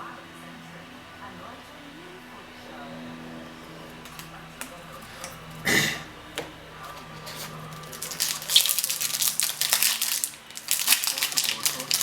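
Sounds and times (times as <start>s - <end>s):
wrapper crinkling and rustling: 6.8s - 12.0s
wrapper ripping: 6.9s - 12.0s.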